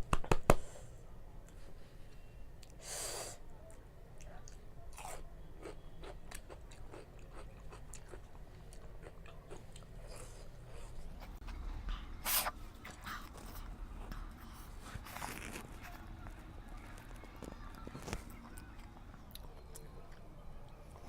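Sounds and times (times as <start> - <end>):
chewing noodles with mouth clicks: 4.2 - 15.9.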